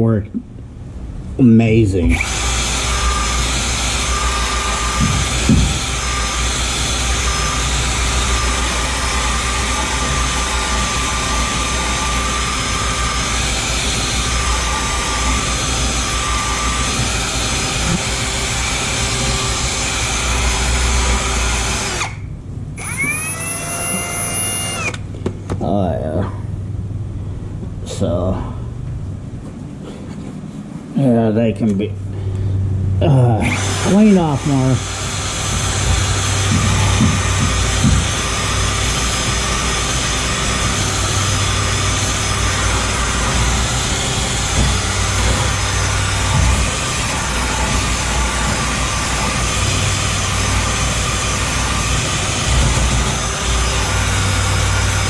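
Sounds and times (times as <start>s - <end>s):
wire brush drill scouring metal: 2.1s - 22.2s, 33.4s - 55.0s.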